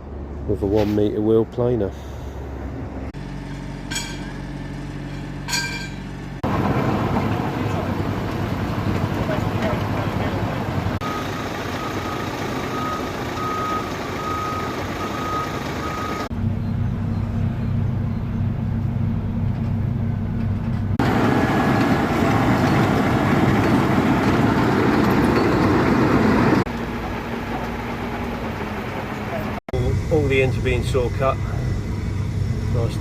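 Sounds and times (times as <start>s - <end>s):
reversing alarm beeping: 11.0s - 16.3s
heavy machinery running: 21.0s - 33.0s.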